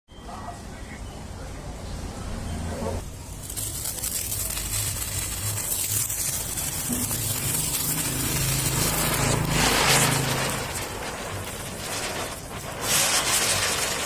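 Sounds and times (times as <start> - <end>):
firework fizzing hiss: 3.0 - 14.0.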